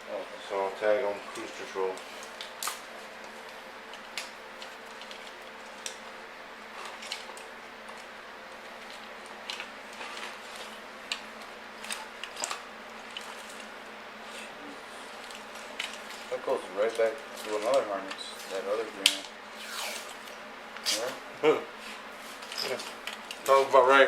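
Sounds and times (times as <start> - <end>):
wiring harness clicking and rustling: 15.2 - 19.3.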